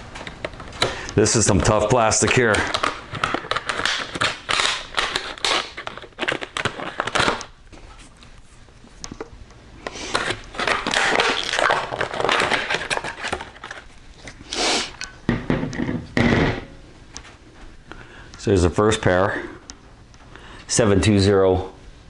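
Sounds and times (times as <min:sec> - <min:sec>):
plastic packaging crackling: 0:01.4 - 0:07.6, 0:10.1 - 0:14.3
scissors cutting plastic packaging: 0:01.6 - 0:07.5, 0:10.1 - 0:13.9.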